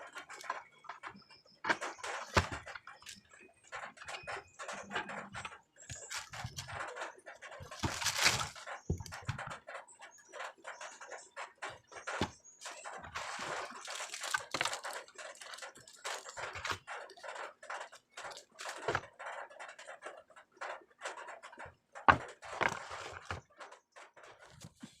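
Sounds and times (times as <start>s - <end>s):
packaging rustling and scraping: 1.7s - 3.2s, 4.8s - 9.6s, 11.7s - 19.2s, 22.1s - 23.5s.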